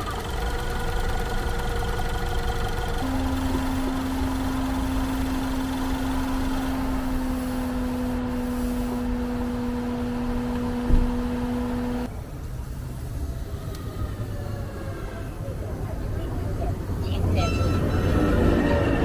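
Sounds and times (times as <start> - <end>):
car engine idling: 0.0 - 12.1
thump: 10.8 - 11.2.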